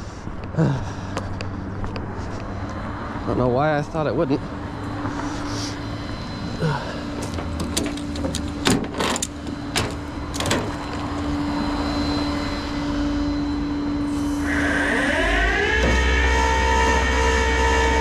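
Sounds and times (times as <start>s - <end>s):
truck engine revving whine: 0.4s - 18.0s
steady hydraulic hum: 4.4s - 18.0s
tow truck winch pulling: 5.6s - 12.5s, 14.1s - 18.0s
tyres cracking and clicking: 7.2s - 11.2s.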